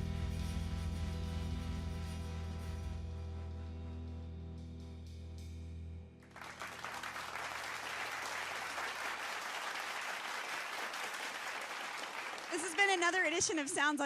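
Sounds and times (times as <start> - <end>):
band sustained chord: 0.0 - 6.2
audience applause: 6.2 - 13.4.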